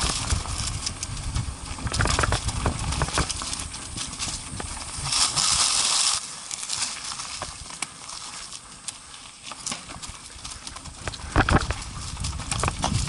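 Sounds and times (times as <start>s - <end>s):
atv knocking and rattling: 0.0s - 4.8s, 10.8s - 13.0s.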